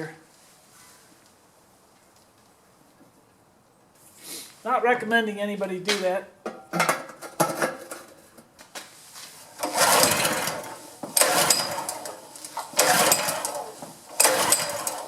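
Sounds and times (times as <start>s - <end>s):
pull starter cord: 9.6s - 15.0s
small engine sputtering and dying: 9.6s - 15.0s.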